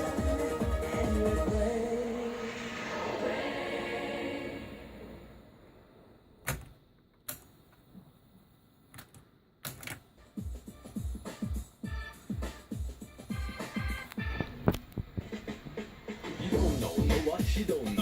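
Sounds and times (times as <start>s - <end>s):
song with steady low beat: 0.0s - 2.4s, 10.3s - 18.0s
music from cassette tape: 0.0s - 4.4s, 9.9s - 18.0s.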